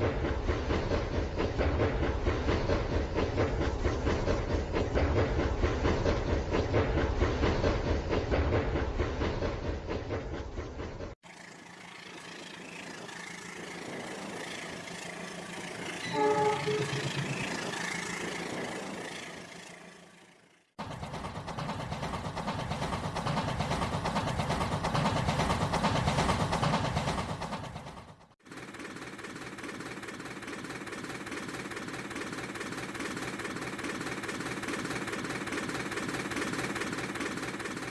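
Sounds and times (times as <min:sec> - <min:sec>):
train running: 0:00.0 - 0:37.9
train horn blast: 0:16.0 - 0:17.6
rapid rattle: 0:17.0 - 0:37.9.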